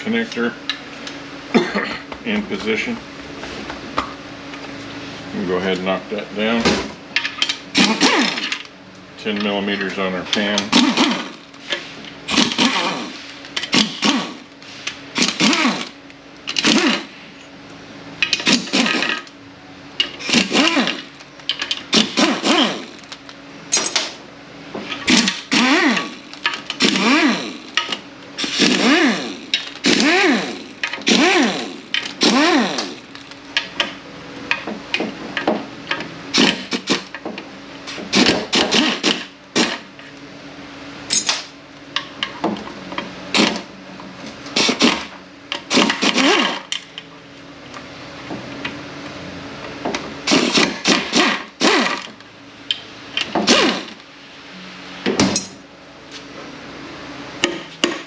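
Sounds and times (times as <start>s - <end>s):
power tool bursts: 7.7s - 8.6s, 10.7s - 11.4s, 12.3s - 14.5s, 15.2s - 17.1s, 18.4s - 19.3s, 20.2s - 21.1s, 21.9s - 23.1s, 25.1s - 33.2s, 36.3s - 37.1s, 38.1s - 39.8s, 44.6s - 45.1s, 45.7s - 46.7s, 50.3s - 52.1s, 53.4s - 54.0s.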